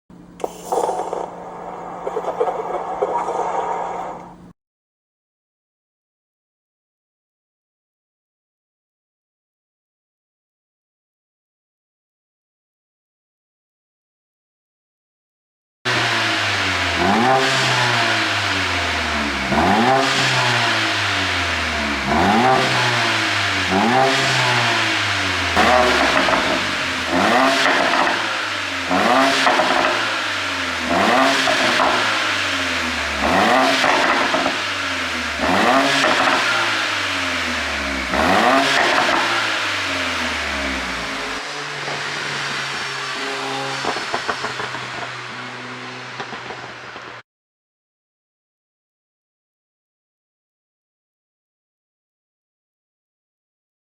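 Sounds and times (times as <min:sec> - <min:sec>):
car engine revving: 0:15.9 - 0:47.2
exhaust pops and crackles: 0:25.5 - 0:30.2, 0:41.1 - 0:47.2.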